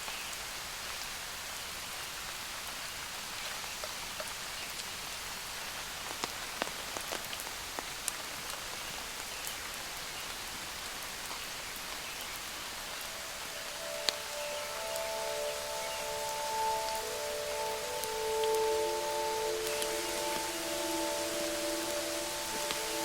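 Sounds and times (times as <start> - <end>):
steady rain falling: 0.0 - 23.0
heavy raindrops ticking: 12.8 - 23.0.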